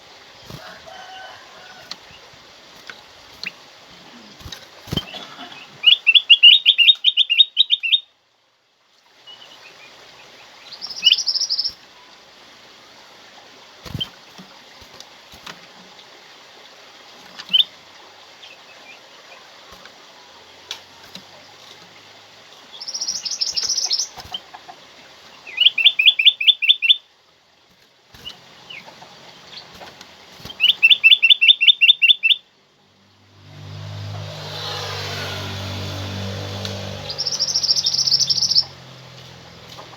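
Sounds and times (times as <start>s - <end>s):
faint steady hiss: 0.0s - 34.3s
bird calling in clipped notes: 4.2s - 8.0s, 22.8s - 24.6s, 29.5s - 32.4s, 36.6s - 39.9s.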